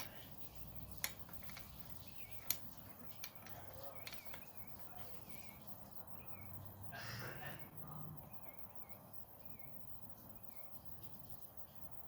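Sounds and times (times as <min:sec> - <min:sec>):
faint high chirps: 0:00.0 - 0:12.0
tyre clicking onto wheel rim: 0:00.9 - 0:04.6.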